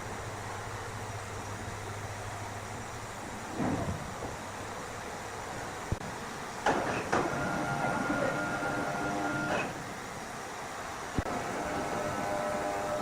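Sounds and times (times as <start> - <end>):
machine clunks: 6.6 - 7.5
machine motor humming: 7.1 - 9.8, 11.2 - 13.0.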